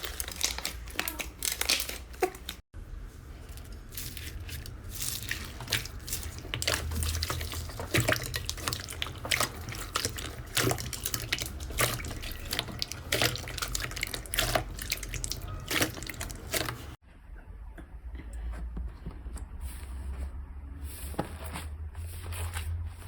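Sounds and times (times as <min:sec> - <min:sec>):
slime squelching by hand: 0:00.0 - 0:17.0.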